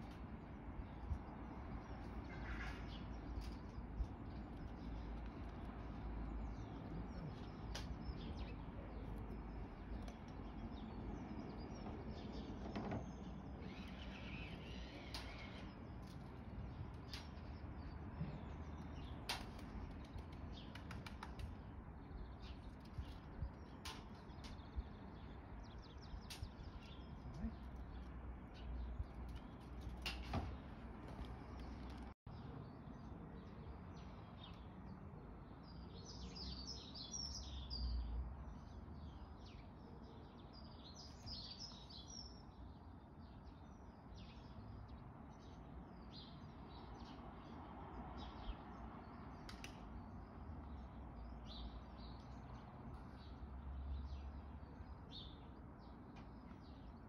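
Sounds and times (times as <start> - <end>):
faint birds chirping: 0.0 - 57.0.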